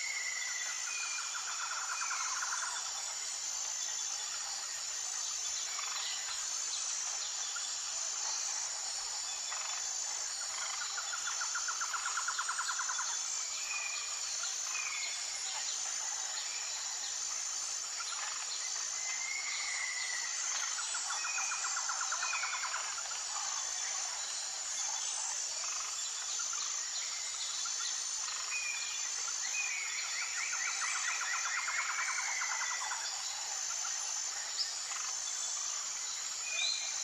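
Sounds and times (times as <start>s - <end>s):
high insect drone: 0.0s - 37.0s.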